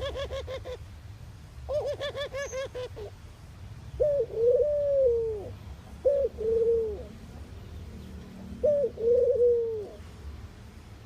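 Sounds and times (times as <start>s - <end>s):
dove cooing: 0.0s - 0.8s, 1.7s - 3.2s, 4.0s - 7.3s, 8.4s - 10.1s.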